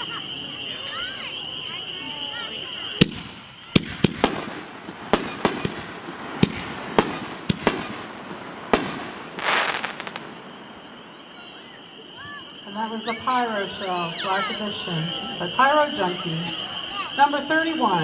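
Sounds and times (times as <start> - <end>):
firework crackle: 0.0 - 18.0
firework shells bursting: 3.0 - 10.6.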